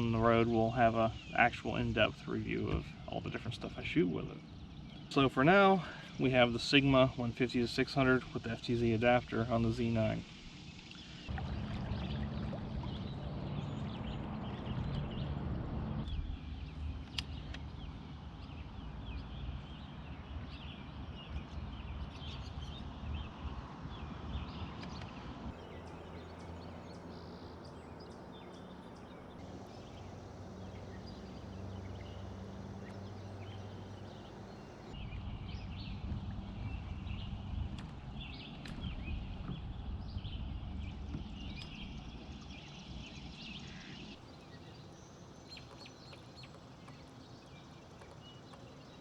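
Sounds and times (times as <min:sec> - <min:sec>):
water noise: 0:00.0 - 0:18.0, 0:24.2 - 0:42.4, 0:43.7 - 0:49.0
steady low hum: 0:00.0 - 0:49.0
bird-like chirps and ticks: 0:16.0 - 0:35.0, 0:37.0 - 0:49.0.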